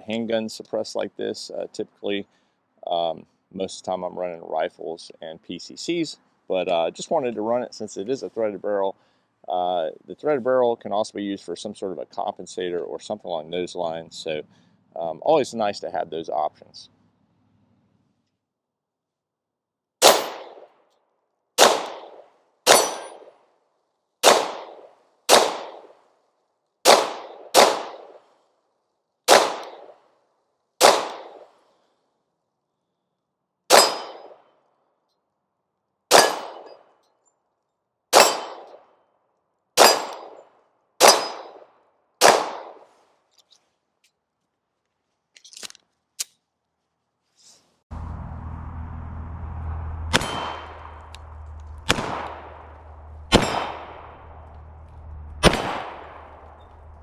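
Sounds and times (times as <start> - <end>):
pistol shots: 20.0 - 20.7, 21.6 - 23.3, 24.2 - 26.0, 26.8 - 28.2, 29.3 - 30.0, 30.8 - 31.5, 33.7 - 34.4, 36.1 - 36.7, 38.1 - 38.8, 39.8 - 40.4, 41.0 - 42.8, 50.1 - 57.0.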